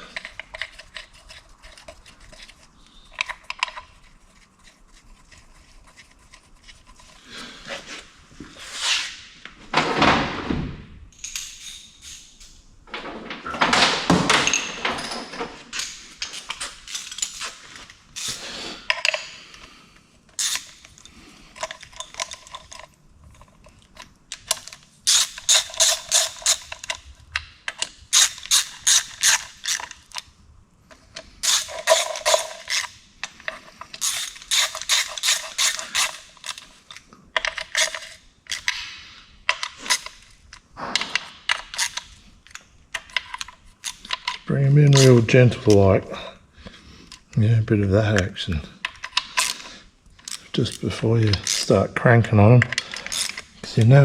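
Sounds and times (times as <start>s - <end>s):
tools scraping and handling: 0.0s - 10.2s, 11.1s - 54.0s
socket ratchet clicking: 20.4s - 20.9s, 24.4s - 27.0s, 27.7s - 30.2s, 34.0s - 36.7s, 52.7s - 53.5s.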